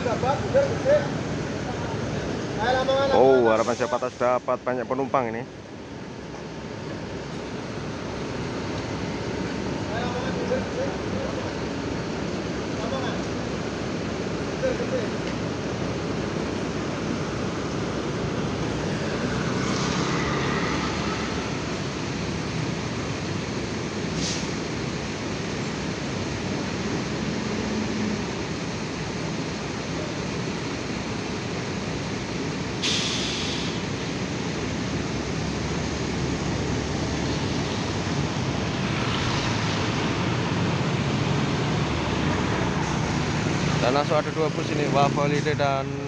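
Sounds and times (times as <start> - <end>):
diesel bus engines rumbling: 0.0 - 46.0
traffic: 0.0 - 46.0
air hiss: 3.5 - 4.5, 24.1 - 24.8, 32.8 - 34.0.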